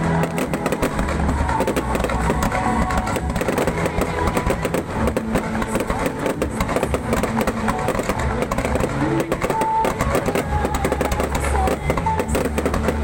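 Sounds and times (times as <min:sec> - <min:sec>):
fireworks bangs and crackles: 0:00.0 - 0:13.0.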